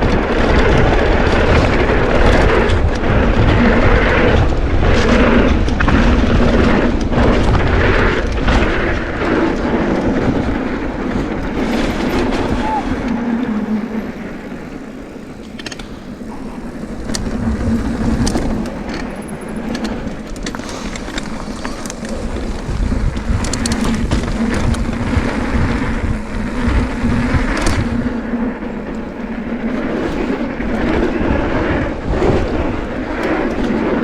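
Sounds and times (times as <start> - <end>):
bike clacking and rattling: 0.0 - 34.0
tyres and air rushing: 6.6 - 33.1.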